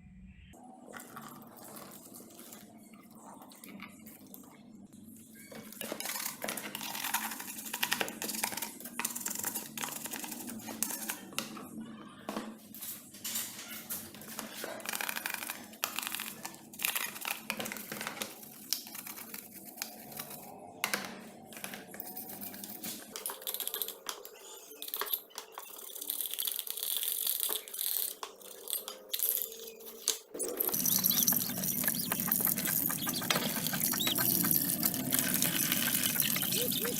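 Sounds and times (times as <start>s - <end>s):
clicks taps and scraping: 14.2s - 36.9s.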